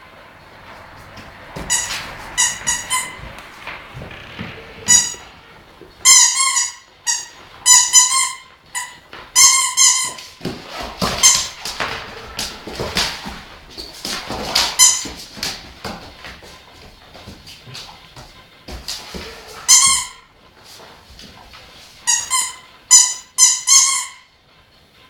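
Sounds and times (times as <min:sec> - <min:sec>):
rough scraping: 0:00.5 - 0:05.9
loud high-pitched squeaks: 0:01.0 - 0:13.0, 0:14.6 - 0:15.2, 0:19.2 - 0:20.3, 0:22.0 - 0:24.4.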